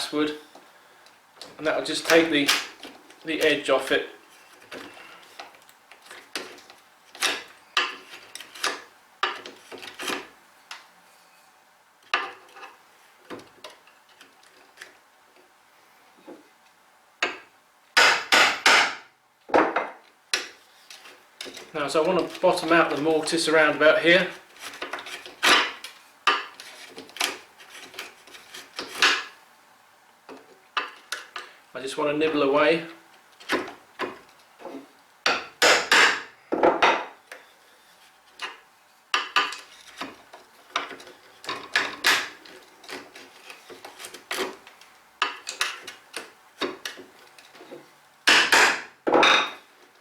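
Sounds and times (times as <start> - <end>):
chisel knocking and scraping wood: 4.5 - 10.3, 24.2 - 29.4, 33.4 - 37.5, 39.2 - 44.6, 45.2 - 49.6.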